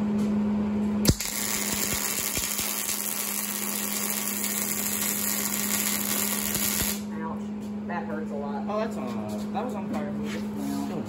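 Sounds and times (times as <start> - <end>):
steady low hum: 0.0 - 11.0
welding arc crackling and hissing: 1.1 - 7.1.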